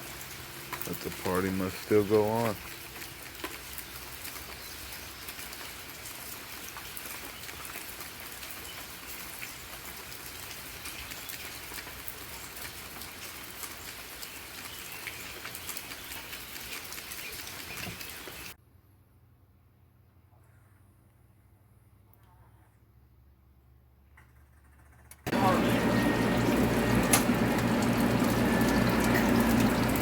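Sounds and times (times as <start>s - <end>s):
rain drops hitting a surface: 0.0s - 18.6s, 25.3s - 30.0s.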